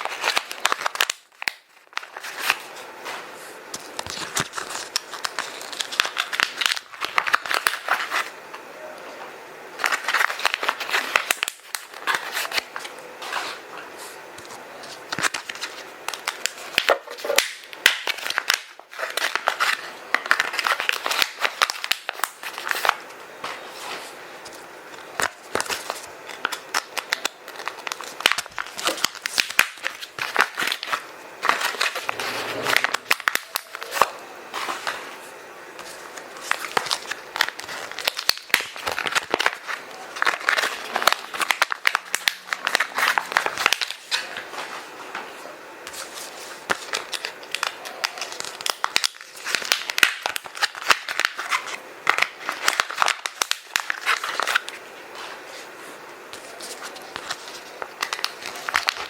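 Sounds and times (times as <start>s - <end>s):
paper and plastic bags crinkling: 3.8s - 8.3s, 9.8s - 59.0s.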